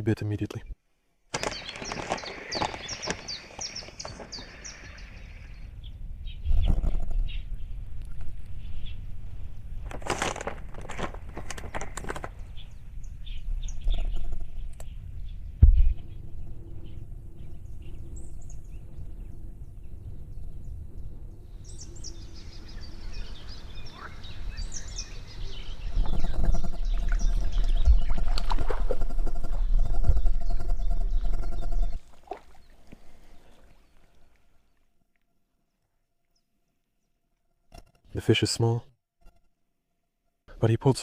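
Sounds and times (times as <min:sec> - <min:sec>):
microphone handling rustle: 0:01.3 - 0:05.0, 0:09.8 - 0:12.7
small birds chirping: 0:01.4 - 0:09.1, 0:11.5 - 0:20.8, 0:21.6 - 0:34.8
wind rumble on microphone: 0:01.5 - 0:10.0, 0:10.8 - 0:32.1.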